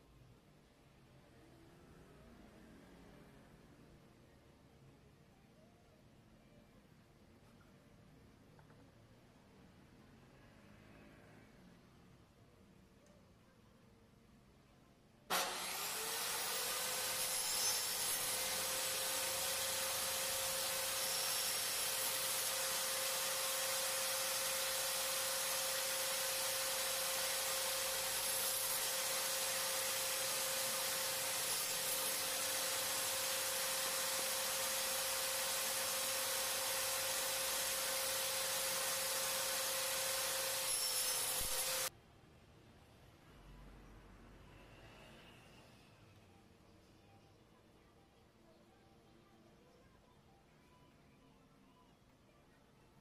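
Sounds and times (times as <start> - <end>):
power tool motor whining: 15.3 - 41.9.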